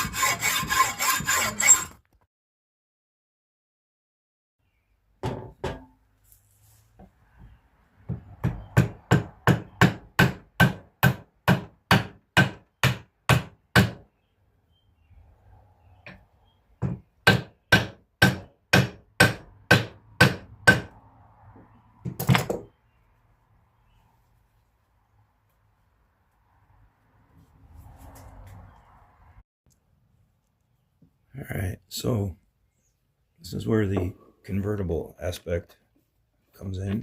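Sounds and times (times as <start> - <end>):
hammer striking: 16.8 - 21.0.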